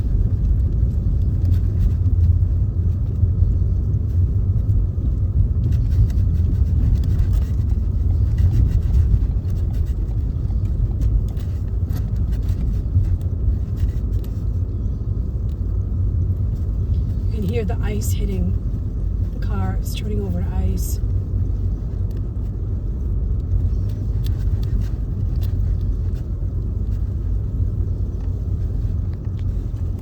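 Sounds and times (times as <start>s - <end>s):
wind buffeting microphone: 0.0s - 17.3s.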